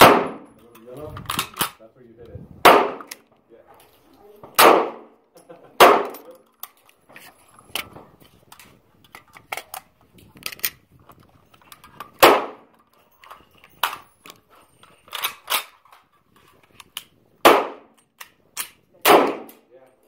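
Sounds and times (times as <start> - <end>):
gunshots: 0.0 - 0.5, 2.6 - 3.2, 4.6 - 5.1, 5.8 - 6.3, 12.2 - 12.6, 17.4 - 17.9, 19.0 - 19.6.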